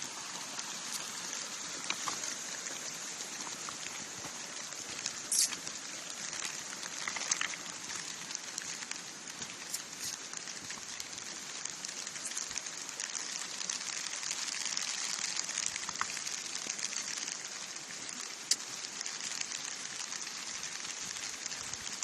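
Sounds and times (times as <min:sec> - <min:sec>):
river water flowing: 0:00.0 - 0:22.0.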